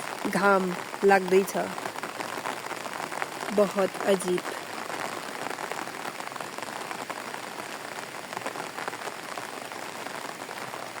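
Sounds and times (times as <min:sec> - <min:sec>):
steady rain patter: 0:00.0 - 0:11.0.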